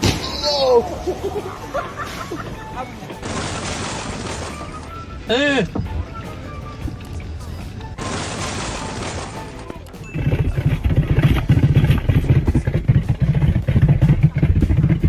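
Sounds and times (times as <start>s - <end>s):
engine running with low pulsing: 10.1s - 15.0s.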